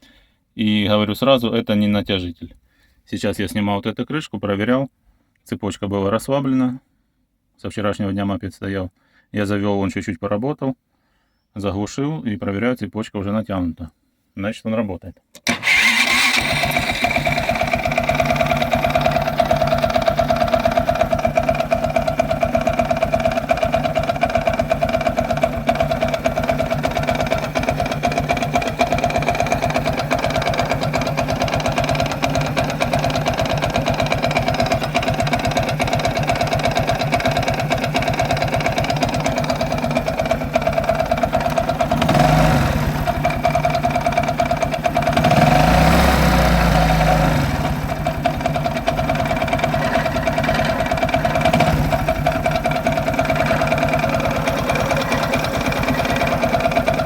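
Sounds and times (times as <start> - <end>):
person talking: 5.5 - 6.8.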